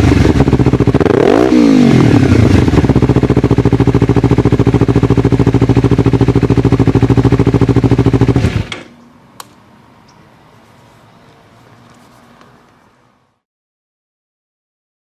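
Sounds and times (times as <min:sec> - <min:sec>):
motorcycle engine idling: 0:00.0 - 0:01.1, 0:02.2 - 0:08.7.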